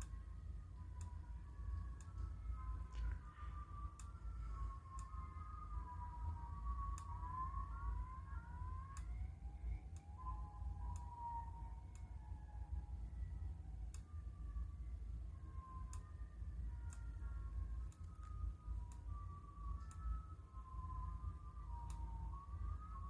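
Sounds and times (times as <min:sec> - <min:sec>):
tornado sirens through small speaker: 0:00.0 - 0:23.0.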